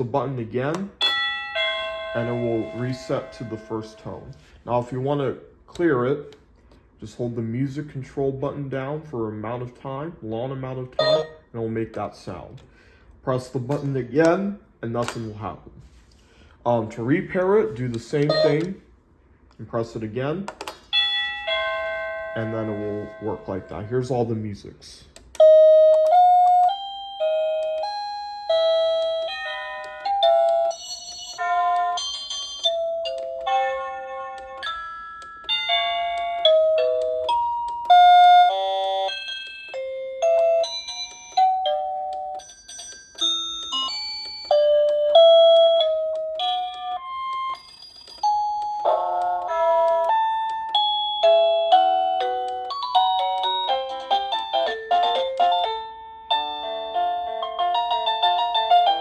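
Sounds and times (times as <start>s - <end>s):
electronic doorbell chime melodies: 1.0s - 4.6s, 11.0s - 11.4s, 20.9s - 24.1s, 25.4s - 59.0s.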